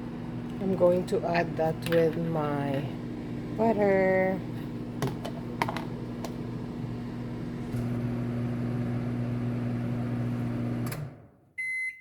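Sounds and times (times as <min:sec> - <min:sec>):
microwave oven humming: 0:00.0 - 0:11.9.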